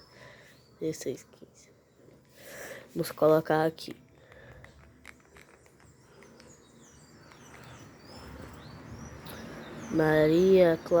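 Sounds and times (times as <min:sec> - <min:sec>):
bird chirps: 0:05.1 - 0:11.0.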